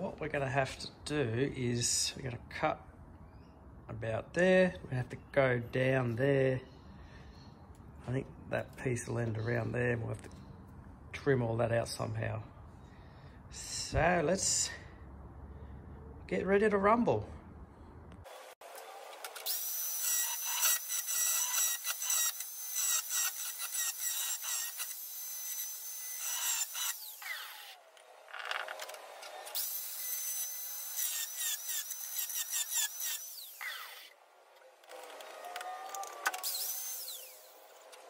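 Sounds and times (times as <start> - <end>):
cutoff disc cutting sheet steel: 19.3 - 27.8, 28.7 - 34.2.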